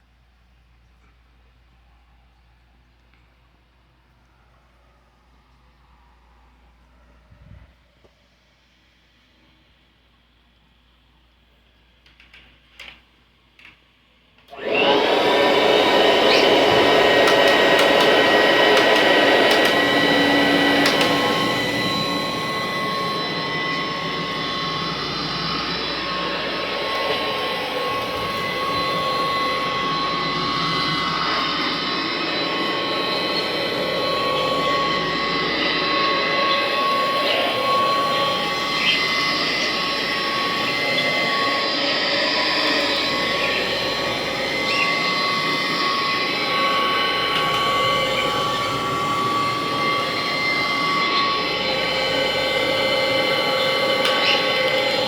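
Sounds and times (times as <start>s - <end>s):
vacuum cleaner motor whining: 14.4s - 55.0s.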